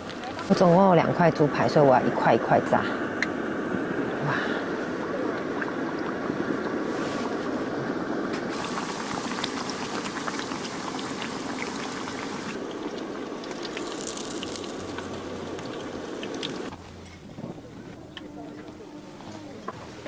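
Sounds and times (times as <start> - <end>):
cutlet deep-frying in oil: 8.3 - 16.7.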